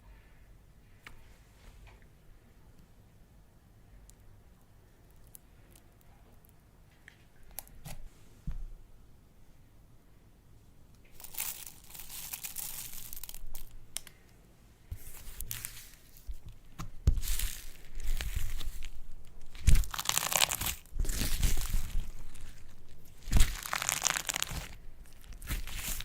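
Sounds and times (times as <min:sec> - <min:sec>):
slime crackling and crinkling: 0:11.1 - 0:14.0, 0:15.0 - 0:26.0.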